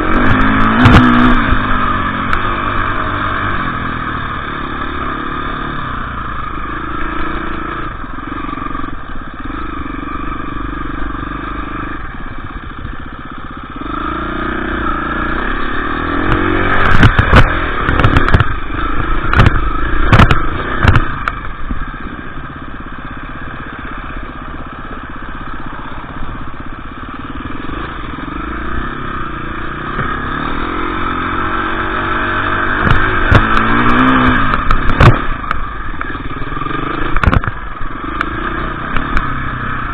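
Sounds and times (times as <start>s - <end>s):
motorcycle engine revving: 0.0s - 39.9s
sharp knocks and clatter: 16.3s - 21.4s, 32.8s - 36.2s, 37.0s - 37.6s.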